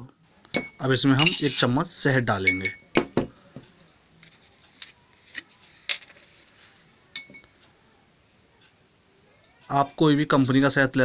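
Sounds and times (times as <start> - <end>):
spoon tapping glassware: 0.5 - 1.6, 2.4 - 3.3, 7.2 - 7.5.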